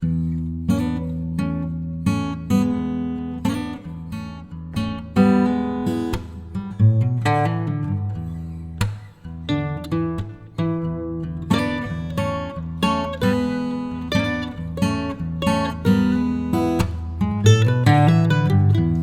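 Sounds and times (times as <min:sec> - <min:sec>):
acoustic guitar strumming chords: 0:04.6 - 0:19.0.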